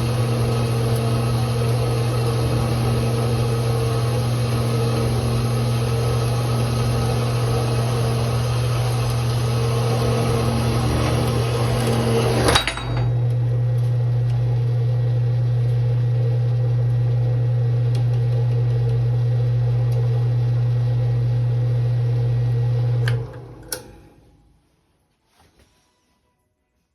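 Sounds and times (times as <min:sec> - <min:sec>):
bandsaw motor humming: 0:00.0 - 0:23.9
sharp metal clank: 0:12.5 - 0:13.2.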